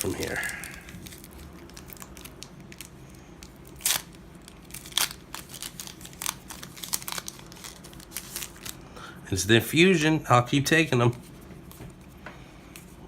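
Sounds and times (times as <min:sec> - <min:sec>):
foil wrapper tearing and crinkling: 0:00.0 - 0:08.8.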